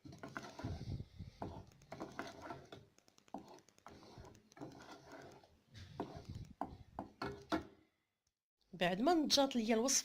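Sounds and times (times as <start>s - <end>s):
light clicks and taps: 1.4s - 5.5s.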